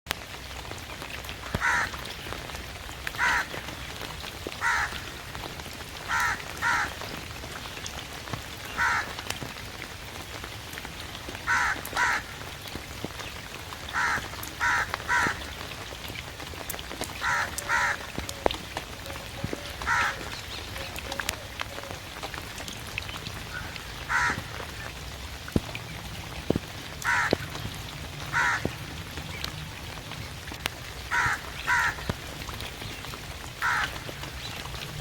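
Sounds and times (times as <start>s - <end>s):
rain falling: 0.1s - 35.0s
crow cawing: 1.6s - 2.0s, 3.2s - 3.6s, 4.6s - 5.0s, 6.1s - 7.0s, 8.8s - 9.2s, 11.5s - 12.4s, 13.9s - 15.4s, 17.2s - 18.4s, 19.2s - 20.3s, 23.5s - 24.6s, 27.0s - 27.4s, 28.3s - 28.7s, 31.1s - 32.1s, 33.6s - 34.0s.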